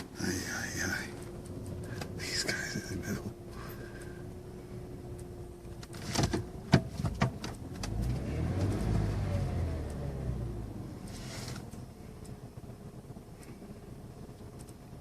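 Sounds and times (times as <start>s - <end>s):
vehicle engine revving: 0.0s - 13.8s.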